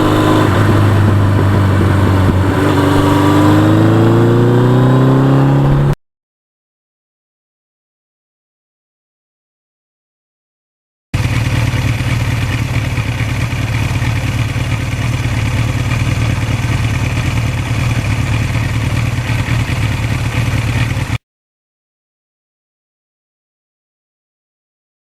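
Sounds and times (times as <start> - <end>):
motorcycle engine running: 0.0 - 6.0, 11.2 - 21.2.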